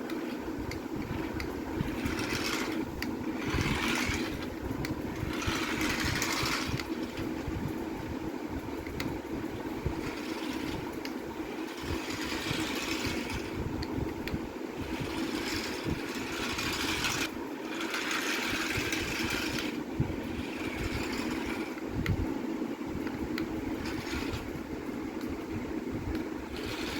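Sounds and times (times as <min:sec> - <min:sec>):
toy plane electric motor whirring: 0:00.7 - 0:07.5, 0:09.8 - 0:13.7, 0:14.7 - 0:21.8, 0:23.8 - 0:24.6, 0:26.4 - 0:26.9.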